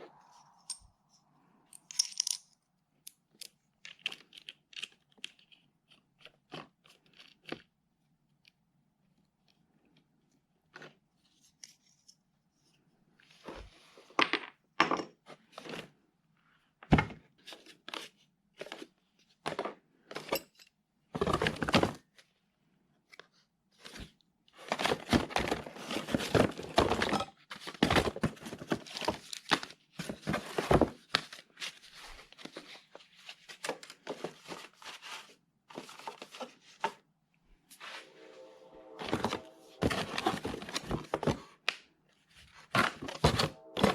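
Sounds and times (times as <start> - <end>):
tool accessories clicking and knocking: 1.8 - 2.5.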